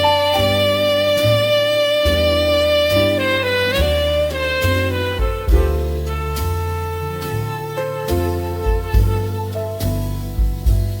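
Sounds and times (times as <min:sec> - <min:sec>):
saxophone long note: 0:00.0 - 0:09.6
bass notes: 0:00.0 - 0:11.0.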